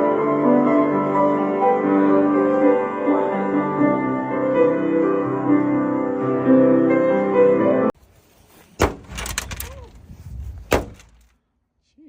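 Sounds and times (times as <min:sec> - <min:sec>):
piano music: 0:00.0 - 0:08.0
sharp bangs: 0:08.8 - 0:09.8, 0:10.6 - 0:11.4.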